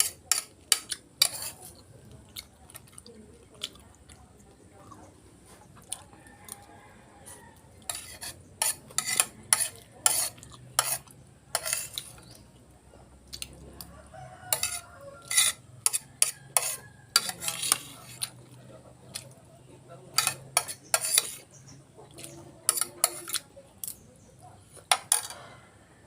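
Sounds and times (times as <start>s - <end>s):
cutlery scraping on a plate: 0.0s - 1.9s, 7.3s - 12.5s, 14.4s - 19.4s, 20.1s - 24.0s, 24.7s - 25.6s.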